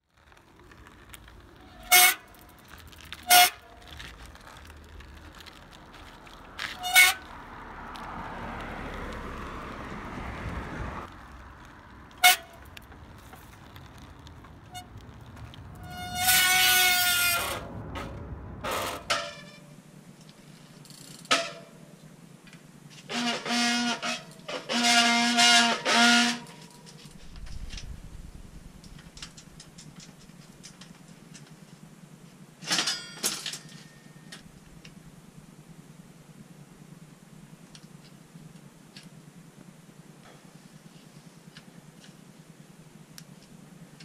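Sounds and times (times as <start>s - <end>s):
bicycle brakes squealing: 0.2s - 8.5s, 12.1s - 17.8s, 23.0s - 29.6s
low honking brake squeals: 0.7s - 8.9s, 11.8s - 19.9s, 22.9s - 29.6s.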